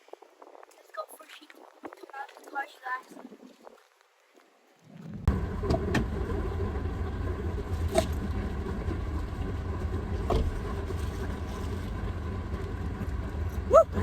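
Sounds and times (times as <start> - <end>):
car road and engine rumble: 5.0 - 14.0.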